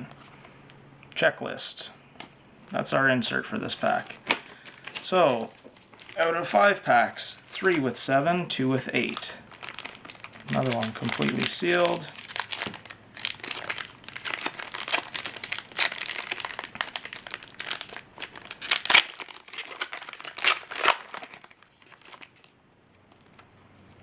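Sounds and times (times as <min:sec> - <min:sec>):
plastic wrapper crinkling and tearing: 0:03.7 - 0:06.6, 0:08.8 - 0:24.0.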